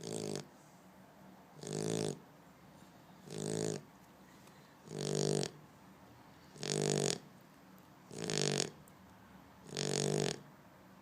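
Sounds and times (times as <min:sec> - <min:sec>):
dog snoring: 0:00.0 - 0:00.5, 0:01.6 - 0:02.2, 0:03.2 - 0:03.9, 0:04.8 - 0:05.6, 0:06.5 - 0:07.3, 0:08.1 - 0:08.8, 0:09.6 - 0:10.4.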